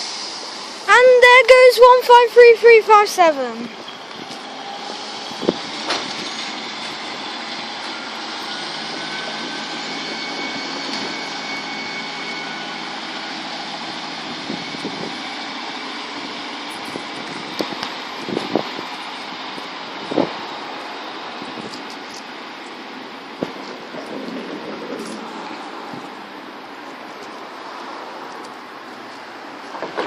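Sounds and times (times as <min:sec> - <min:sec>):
diesel train passing: 0:00.0 - 0:30.0
thin whining tones: 0:03.6 - 0:17.4.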